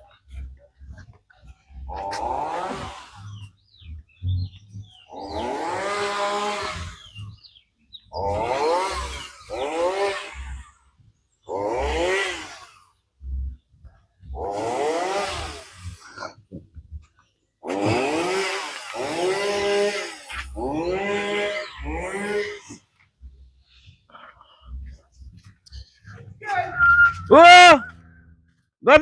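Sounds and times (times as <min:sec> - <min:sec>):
small engine revving: 0:00.0 - 0:28.7.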